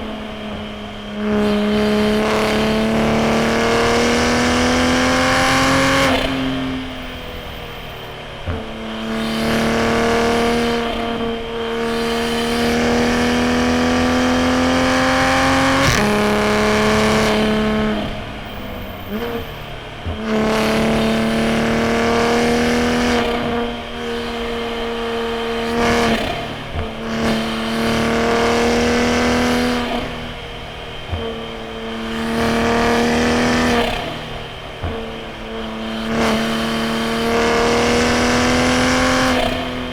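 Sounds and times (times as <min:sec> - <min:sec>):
car engine accelerating hard: 0:00.0 - 0:39.9
sharp exhaust pops: 0:14.0 - 0:22.0.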